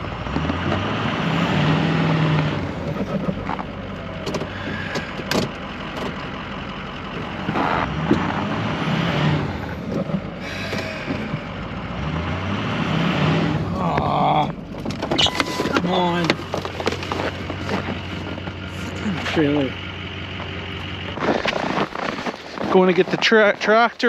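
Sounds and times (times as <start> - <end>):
truck engine running: 0.0 - 24.0
sharp knocks and clanks: 2.9 - 6.2.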